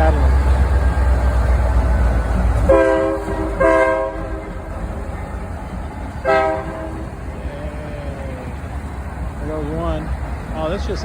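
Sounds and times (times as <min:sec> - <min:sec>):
train air horn blasts: 0:02.6 - 0:05.0, 0:06.1 - 0:07.9.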